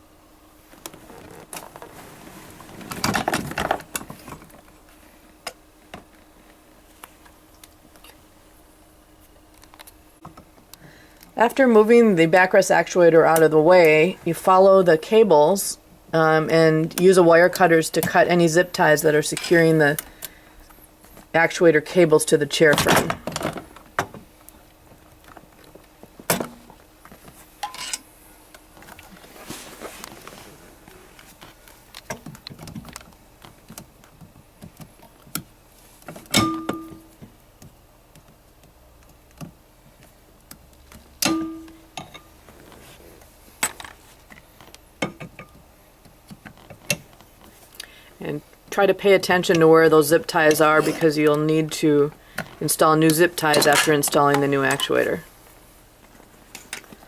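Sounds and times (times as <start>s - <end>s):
rustling: 28.7s - 31.8s.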